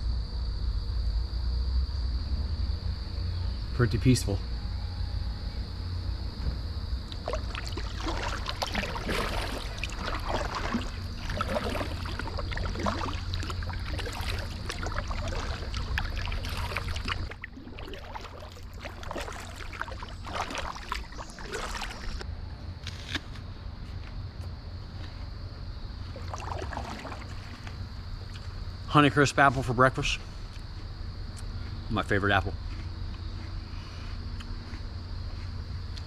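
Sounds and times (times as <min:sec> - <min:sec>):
kayak paddle splashing water: 0:07.1 - 0:22.2, 0:26.0 - 0:28.6.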